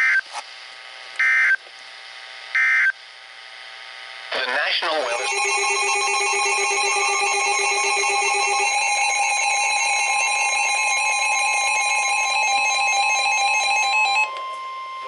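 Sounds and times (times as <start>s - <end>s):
electronic alarm steady tones: 2.6s - 2.9s, 4.5s - 15.0s
rapid pulsing beeps: 4.5s - 15.0s.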